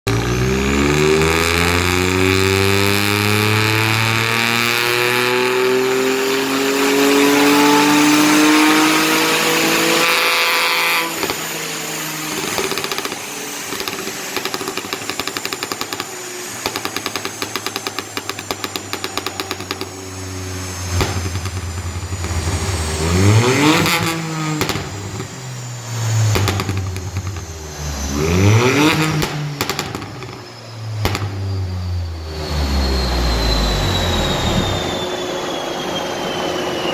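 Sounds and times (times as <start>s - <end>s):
exhaust crackles and pops: 0.0s - 35.0s
car engine revving: 0.0s - 36.4s.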